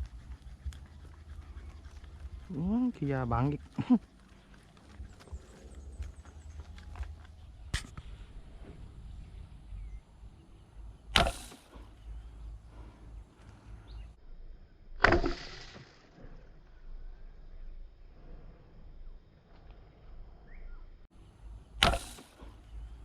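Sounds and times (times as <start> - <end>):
sharp click: 11.1 - 11.8, 21.8 - 22.5
arrow whooshing: 11.1 - 12.0, 15.0 - 16.2, 21.8 - 22.6.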